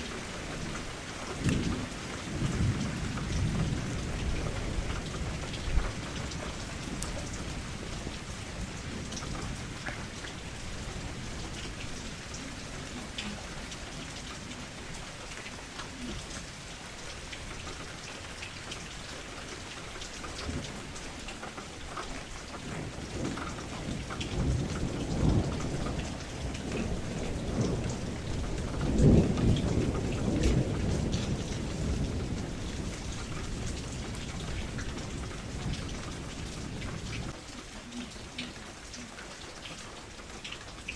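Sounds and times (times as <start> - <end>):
thunder rumbling: 0.0 - 19.0, 22.4 - 38.5
steady rain: 0.0 - 40.9.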